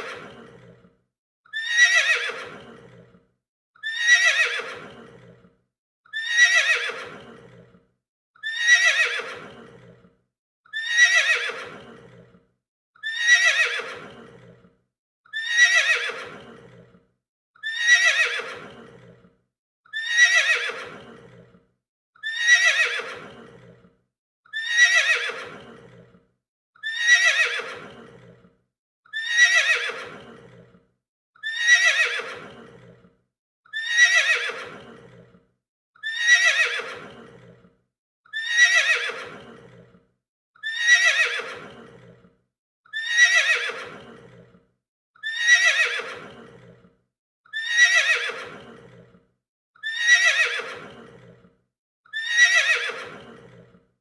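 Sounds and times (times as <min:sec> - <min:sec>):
horse neighing: 0:01.6 - 0:03.1, 0:03.8 - 0:05.4, 0:06.2 - 0:07.7, 0:08.4 - 0:10.0, 0:10.8 - 0:12.3, 0:15.4 - 0:16.9, 0:17.7 - 0:19.2, 0:20.0 - 0:21.5, 0:22.3 - 0:23.8, 0:24.6 - 0:26.1, 0:26.9 - 0:28.4, 0:29.2 - 0:30.7, 0:31.5 - 0:33.0, 0:33.8 - 0:35.3, 0:36.1 - 0:37.6, 0:38.4 - 0:39.9, 0:40.7 - 0:42.2, 0:43.0 - 0:44.5, 0:45.3 - 0:46.8, 0:47.6 - 0:49.1, 0:49.9 - 0:51.3, 0:52.2 - 0:53.7.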